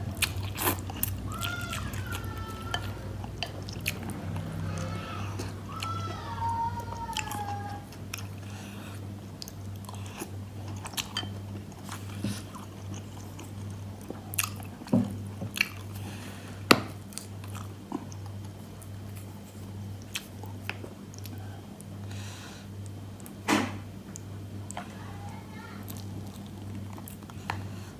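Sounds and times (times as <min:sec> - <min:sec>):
person chewing food: 0:00.0 - 0:23.3, 0:25.9 - 0:27.9.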